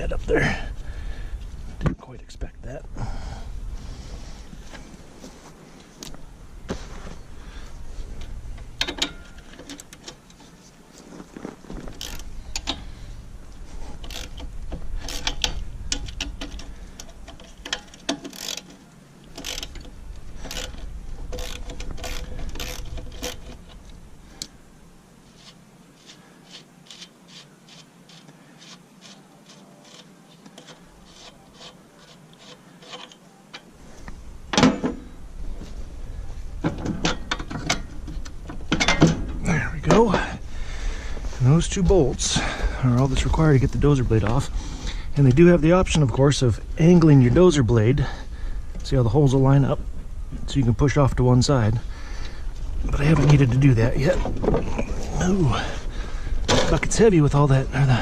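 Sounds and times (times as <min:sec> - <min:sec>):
ratchet wrench clicking: 0:12.0 - 0:12.8, 0:14.0 - 0:18.7, 0:19.3 - 0:23.9.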